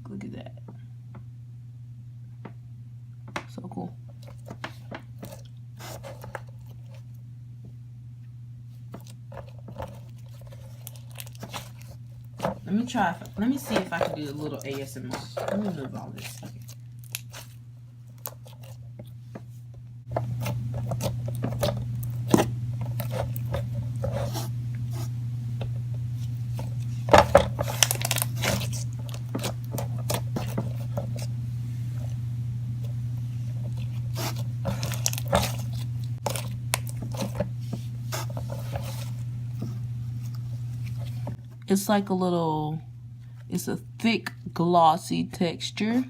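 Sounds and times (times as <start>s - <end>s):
steady low hum: 0.0s - 46.0s
slime crackling and squelching: 8.9s - 19.1s, 20.2s - 25.1s, 26.2s - 41.4s.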